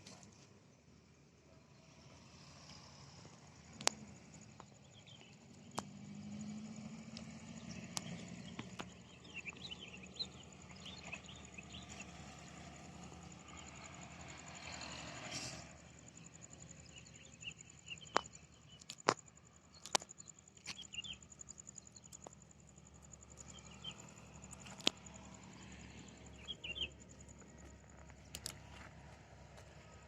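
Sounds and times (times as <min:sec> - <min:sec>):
small birds chirping: 0:02.6 - 0:28.9
sharp clicks: 0:07.1 - 0:09.7, 0:18.0 - 0:20.9, 0:28.0 - 0:28.7.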